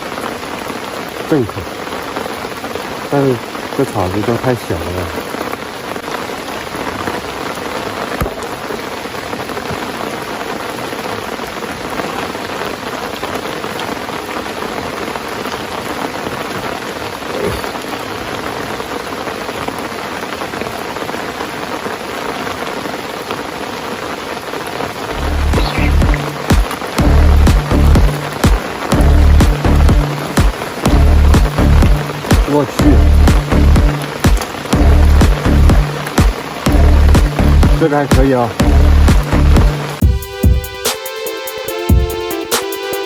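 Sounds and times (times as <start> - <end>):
steady rain falling: 0.0 - 43.0
music with heavy low beat: 25.2 - 43.0.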